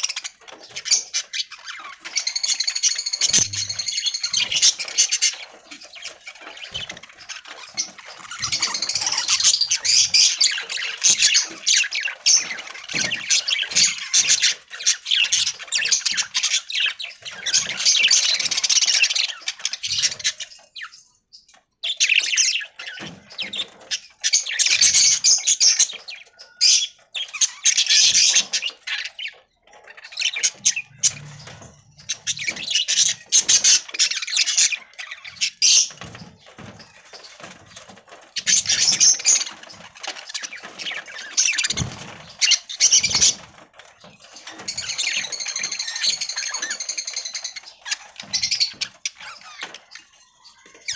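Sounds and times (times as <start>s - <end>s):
budgerigars chattering and squawking: 0.0s - 50.9s.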